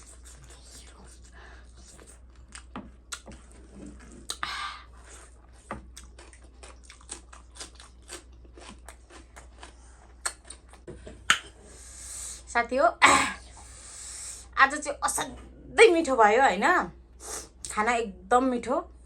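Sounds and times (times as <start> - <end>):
chewing crunchy food: 0.0 - 11.5.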